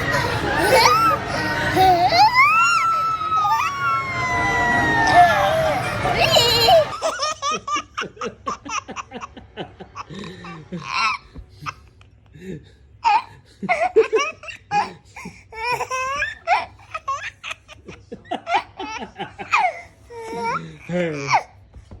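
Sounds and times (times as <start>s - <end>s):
baby laughing: 0.0s - 9.2s, 13.0s - 20.6s.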